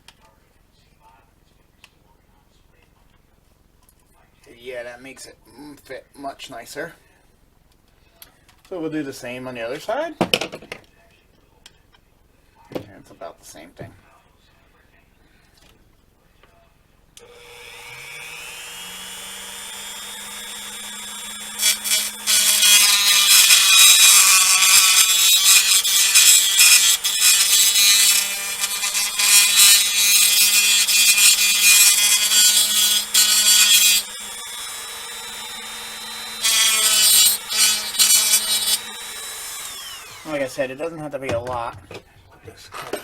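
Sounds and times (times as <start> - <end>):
rotary tool whine: 17.2 - 40.4
rotary tool cutting plastic: 18.6 - 40.3.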